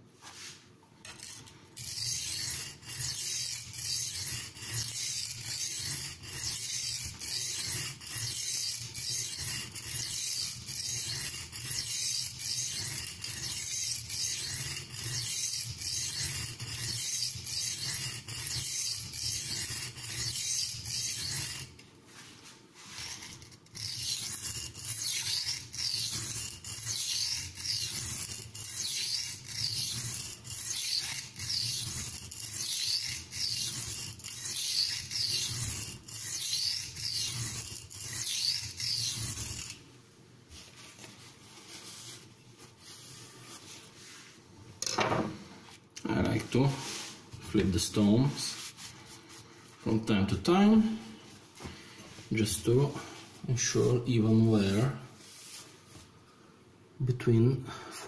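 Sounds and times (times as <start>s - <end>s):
knife rasping on a sharpening stone: 0.4s - 21.8s, 22.8s - 39.8s.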